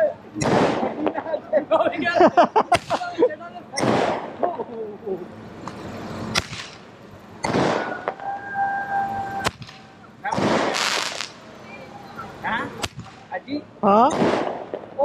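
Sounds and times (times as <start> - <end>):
firework cracks: 0.4 - 1.3, 2.7 - 3.1, 3.8 - 4.5, 5.7 - 8.3, 9.4 - 11.5, 12.8 - 13.4, 14.1 - 15.0
firework whistle: 7.5 - 9.9
firework hissing whooshes: 9.4 - 11.5.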